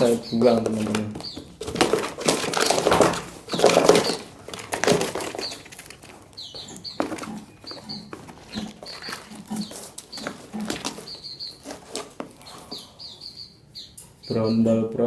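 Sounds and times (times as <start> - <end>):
rustling and knocks in cage: 0.0 - 12.9
songbirds chirping: 0.0 - 15.0
wings flapping: 0.6 - 6.4.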